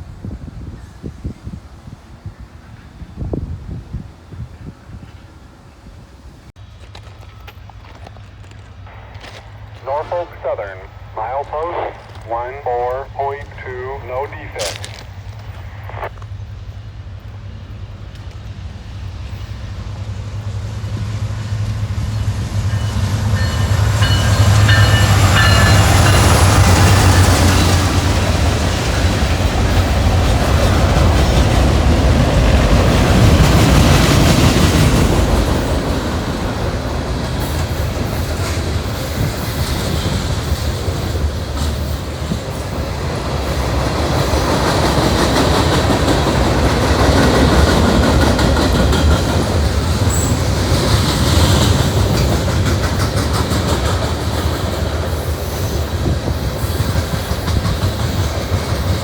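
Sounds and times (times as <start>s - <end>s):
freight train rolling past: 16.2s - 59.0s.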